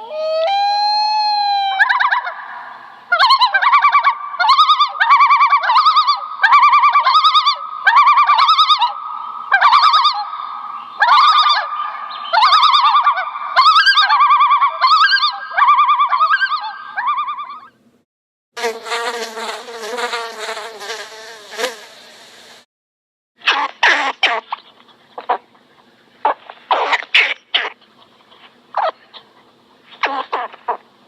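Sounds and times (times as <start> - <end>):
bird warbling calls: 1.8 - 17.8.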